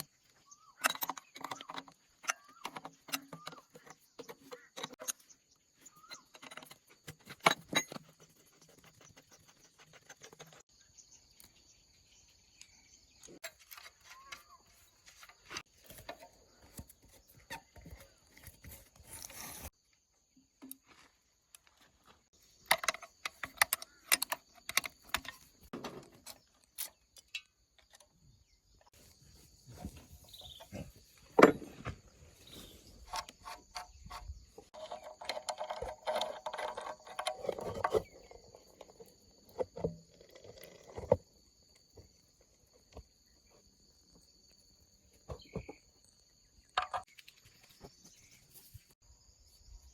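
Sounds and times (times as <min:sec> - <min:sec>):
crickets chirping: 0:10.4 - 0:49.9.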